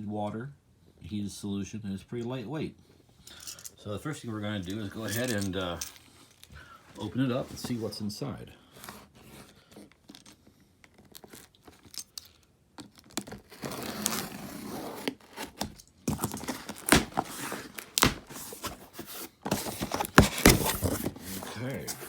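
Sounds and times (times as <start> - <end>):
cardboard and packaging rustling: 4.4 - 22.0
packing tape tearing: 12.8 - 22.0
sharp knocks and scrapes: 16.1 - 22.0.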